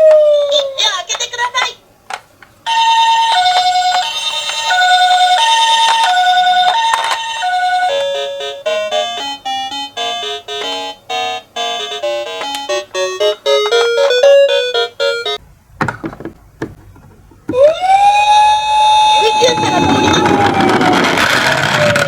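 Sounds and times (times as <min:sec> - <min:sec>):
toy two-tone siren: 0:02.7 - 0:15.4, 0:17.5 - 0:22.0
electronic tune of bright notes: 0:07.4 - 0:15.4.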